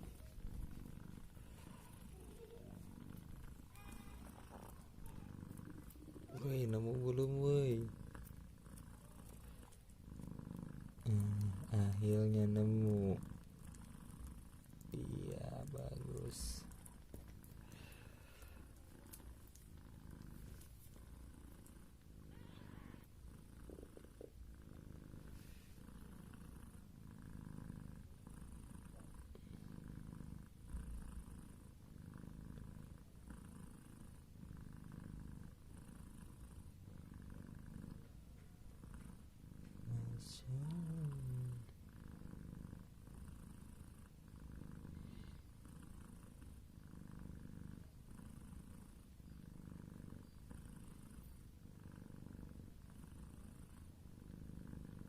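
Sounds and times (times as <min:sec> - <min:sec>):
cat purring: 0:00.0 - 0:55.0.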